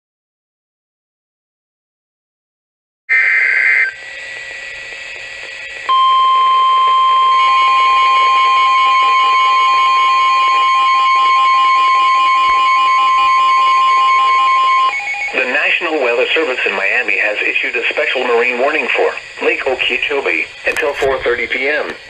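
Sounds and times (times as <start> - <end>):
steady single-pitch alarm tone: 3.1 - 4.7, 5.7 - 16.5
digital header tones: 5.9 - 15.8.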